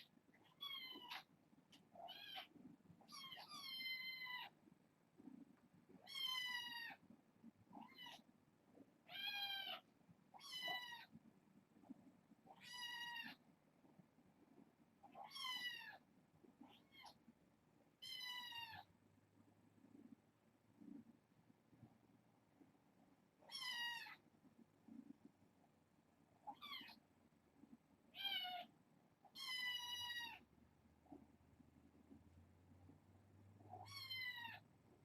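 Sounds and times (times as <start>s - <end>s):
kitten meowing: 12.5s - 13.4s, 26.5s - 27.0s, 28.2s - 28.7s, 29.4s - 30.4s, 33.7s - 34.6s.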